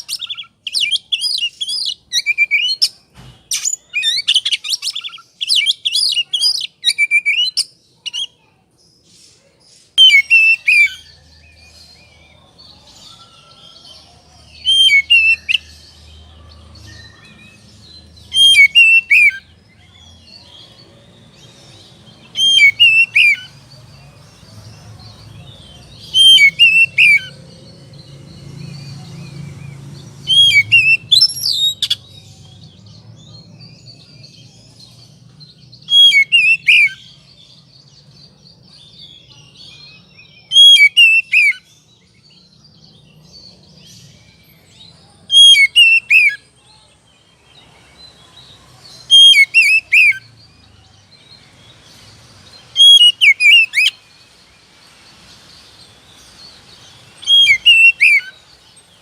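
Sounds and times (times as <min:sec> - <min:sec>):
bird whistled phrases: 0:00.0 - 0:08.4, 0:10.0 - 0:11.7, 0:14.6 - 0:15.7, 0:18.2 - 0:19.5, 0:22.2 - 0:23.5, 0:26.1 - 0:27.4, 0:30.2 - 0:32.0, 0:35.9 - 0:37.0, 0:40.5 - 0:41.7, 0:45.3 - 0:46.4, 0:49.1 - 0:50.3, 0:52.8 - 0:54.0, 0:57.2 - 0:58.4
faint bird twittering: 0:00.0 - 0:59.0.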